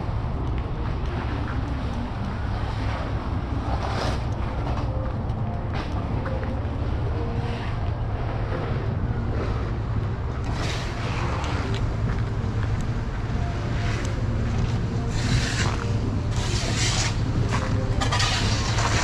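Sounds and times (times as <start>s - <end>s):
low rumble of vehicles: 0.0s - 19.0s.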